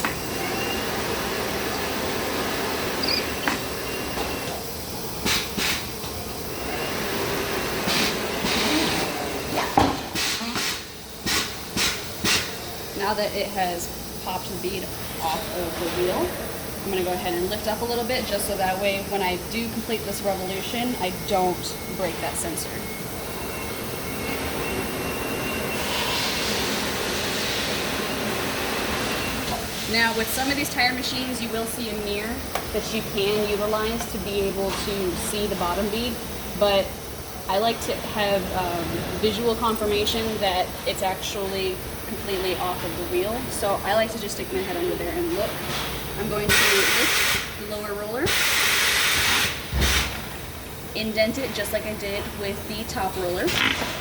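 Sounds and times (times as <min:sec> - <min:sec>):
tyre changing machine running: 0:00.0 - 0:13.3, 0:21.7 - 0:50.9.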